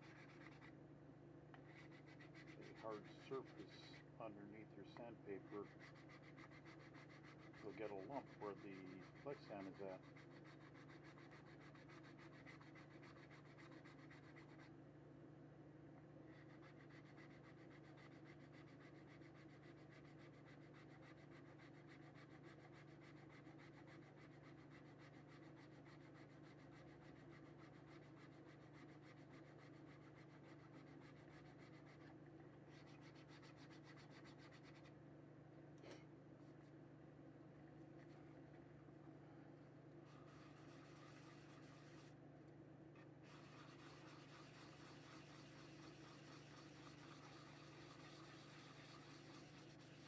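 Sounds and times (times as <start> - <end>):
sandpaper scratching on plastic: 0.0 - 0.8, 1.6 - 4.0, 4.9 - 14.7, 16.3 - 35.0, 40.0 - 42.2, 43.2 - 50.0
low steady hum: 26.0 - 50.0.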